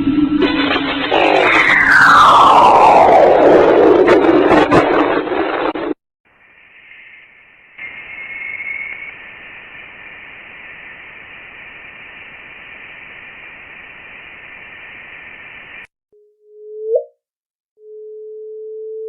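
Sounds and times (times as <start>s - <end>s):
low tone gliding upward: 1.2s - 4.6s
steady electronic hiss: 6.3s - 15.9s.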